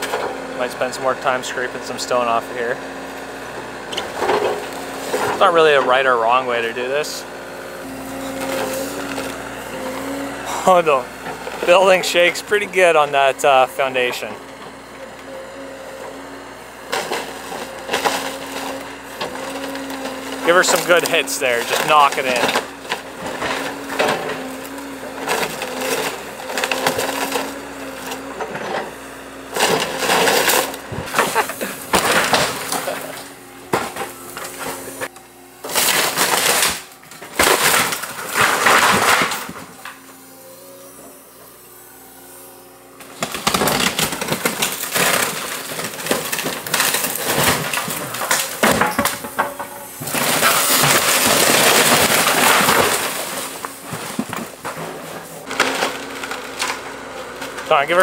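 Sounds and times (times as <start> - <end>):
wooden building crashing: 19.3 - 24.6, 29.6 - 34.7, 35.7 - 39.8, 43.2 - 56.8.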